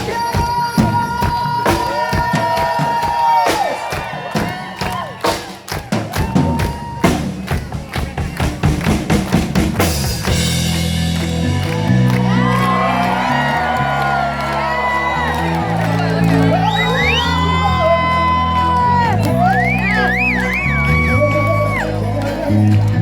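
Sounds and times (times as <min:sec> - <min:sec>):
bass and full chords: 0:09.6 - 0:23.0.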